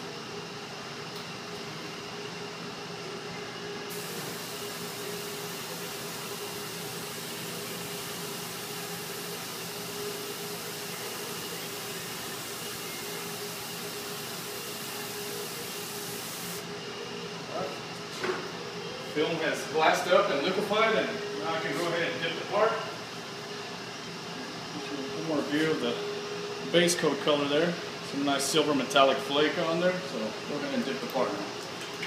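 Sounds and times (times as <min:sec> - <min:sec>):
steady hum with tones: 0:00.0 - 0:31.5
spray hissing: 0:03.9 - 0:16.6.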